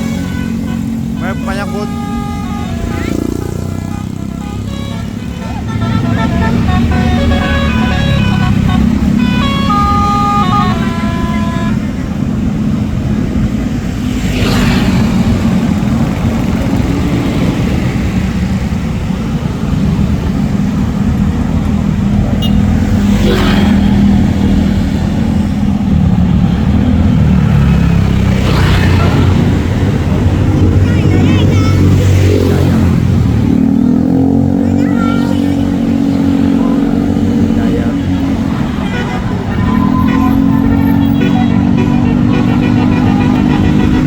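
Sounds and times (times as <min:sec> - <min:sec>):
musical bus horn: 0:00.0 - 0:12.7, 0:22.3 - 0:22.8, 0:33.4 - 0:44.0
bus engine running low: 0:14.9 - 0:22.4.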